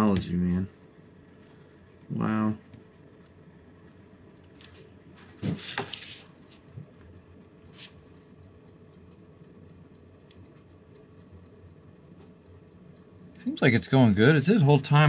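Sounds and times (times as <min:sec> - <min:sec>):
alarm clock ticking: 0:06.9 - 0:15.0.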